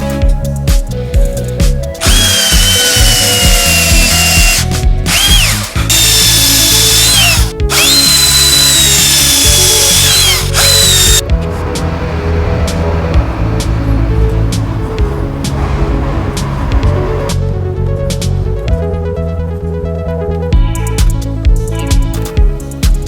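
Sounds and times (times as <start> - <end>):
background music: 0.0 - 23.0
power tool motor whining: 2.0 - 11.2.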